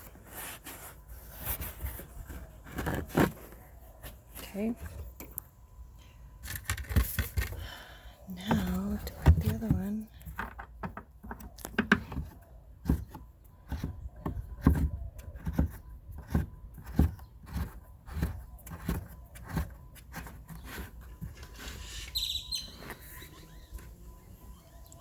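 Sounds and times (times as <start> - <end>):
plastic clicks and knocks: 8.5 - 17.2.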